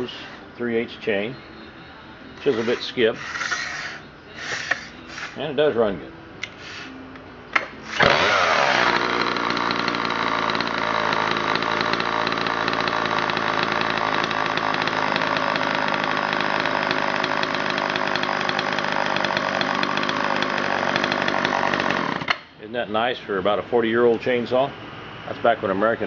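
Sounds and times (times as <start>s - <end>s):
chainsaw engine idling: 2.4s - 3.2s, 7.8s - 22.4s.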